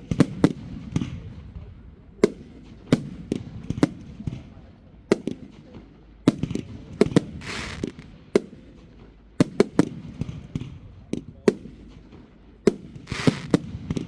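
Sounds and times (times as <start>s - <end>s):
fireworks banging: 6.3s - 10.0s, 11.5s - 14.0s
firework hiss: 7.3s - 8.1s, 13.1s - 13.6s.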